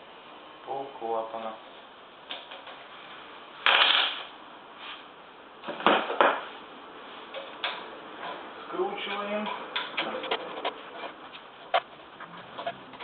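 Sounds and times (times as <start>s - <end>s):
metal parts scraping: 3.6s - 4.2s.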